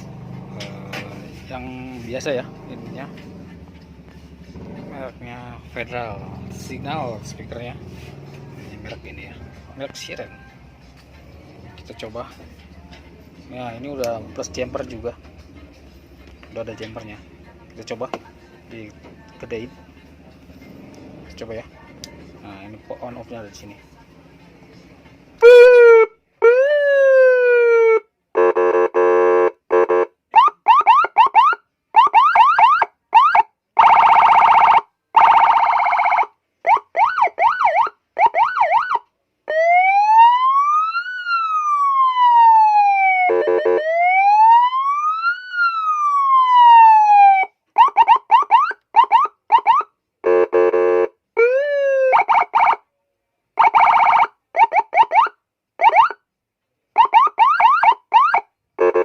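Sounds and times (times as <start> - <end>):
electronic police siren: 25.4 - 28.0, 30.4 - 49.9, 51.4 - 52.8, 53.6 - 56.2, 57.0 - 58.5.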